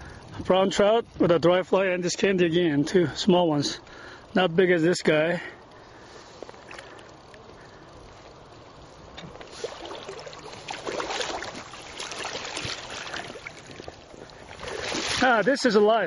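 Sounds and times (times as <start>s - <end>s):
water sloshing and splashing: 9.2s - 15.7s.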